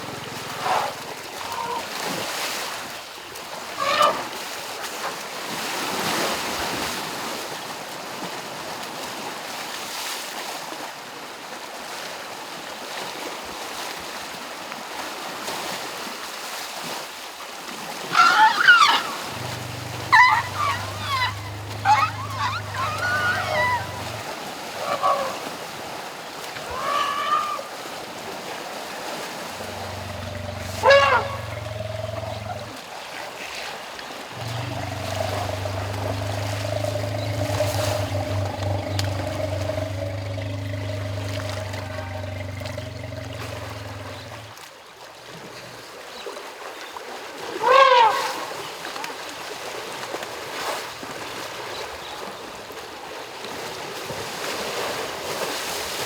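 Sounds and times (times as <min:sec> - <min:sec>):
rushing water: 0:00.0 - 0:06.8, 0:17.9 - 0:47.4
elephants splashing in water: 0:00.0 - 0:07.0, 0:17.9 - 0:44.7
elephants squeaking and chirping: 0:18.2 - 0:24.2, 0:29.6 - 0:32.7, 0:34.4 - 0:44.5.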